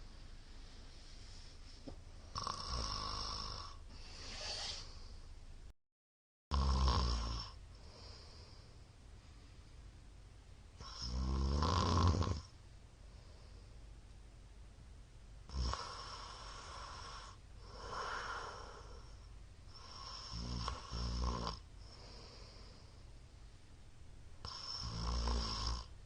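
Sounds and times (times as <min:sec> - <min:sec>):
soft breathing: 0:00.0 - 0:02.3, 0:03.7 - 0:05.4, 0:07.7 - 0:09.9, 0:13.0 - 0:14.0, 0:15.8 - 0:20.4, 0:21.8 - 0:23.8
man snoring loudly: 0:02.3 - 0:03.8, 0:06.5 - 0:07.6, 0:10.8 - 0:12.5, 0:15.5 - 0:19.0, 0:19.8 - 0:21.6, 0:24.4 - 0:25.9.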